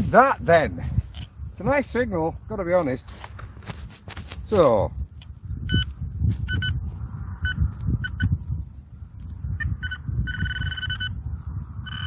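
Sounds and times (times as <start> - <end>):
wind rumble on microphone: 0.0 - 12.0
metal detector beeps: 5.6 - 6.8, 7.4 - 8.4, 9.6 - 12.0.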